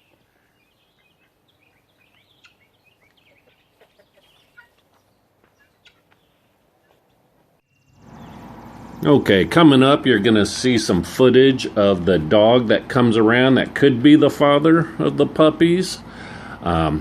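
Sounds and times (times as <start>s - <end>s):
small animals chirping and squeaking: 0.0s - 7.2s.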